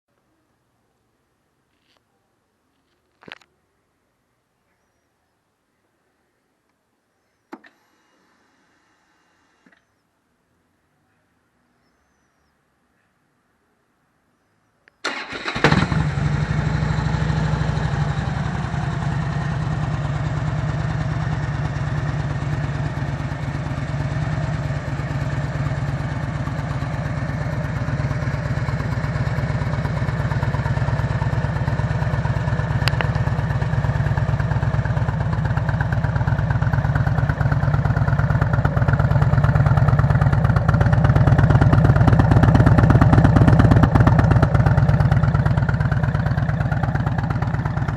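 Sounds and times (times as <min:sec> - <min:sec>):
vehicle engine starting and idling: 0:15.0 - 0:47.9.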